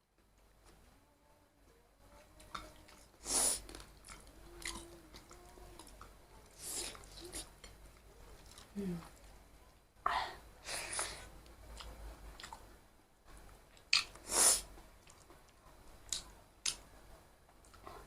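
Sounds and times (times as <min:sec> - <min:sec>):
person chewing and eating: 0:02.4 - 0:09.3, 0:10.8 - 0:12.7, 0:13.7 - 0:16.8
sharp mouth clicks: 0:13.9 - 0:14.2.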